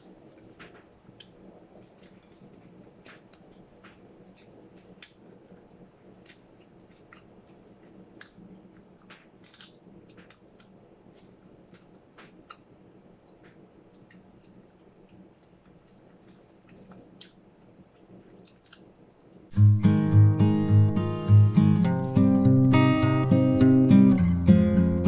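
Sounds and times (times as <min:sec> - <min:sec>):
faint low hum: 0:00.0 - 0:25.0
chewing crunchy food: 0:01.2 - 0:13.0, 0:13.9 - 0:19.4.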